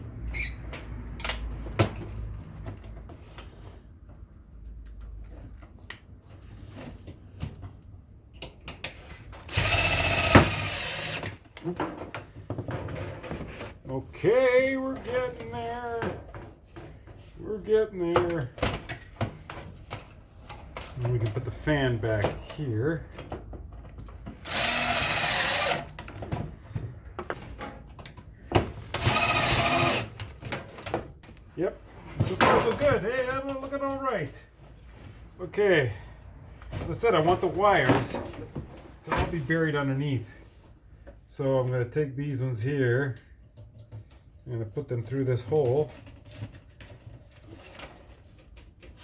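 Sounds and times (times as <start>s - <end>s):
power drill running: 9.5s - 11.3s, 24.4s - 25.9s, 29.0s - 30.1s.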